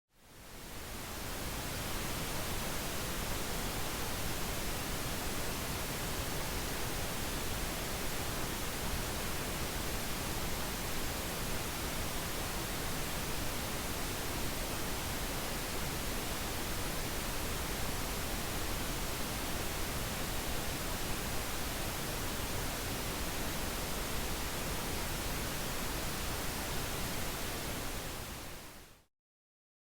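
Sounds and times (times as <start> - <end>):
pink noise hiss: 0.3 - 29.1.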